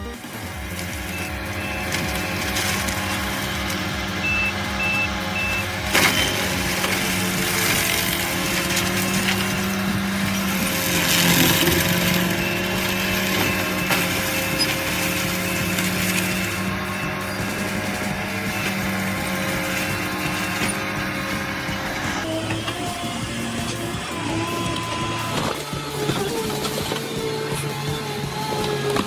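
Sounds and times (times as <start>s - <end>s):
heavy machine engine running: 0.0s - 29.0s
reversing alarm beeping: 0.0s - 29.0s.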